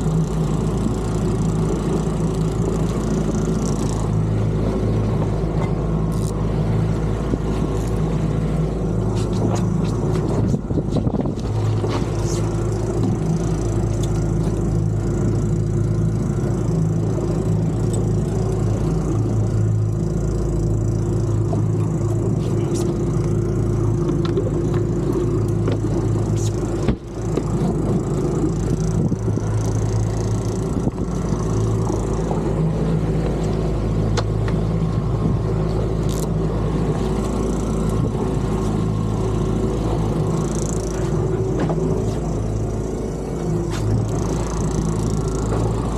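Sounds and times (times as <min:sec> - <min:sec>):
boat engine droning: 0:00.0 - 0:45.9
water noise: 0:00.0 - 0:45.9
wind noise: 0:09.4 - 0:12.4.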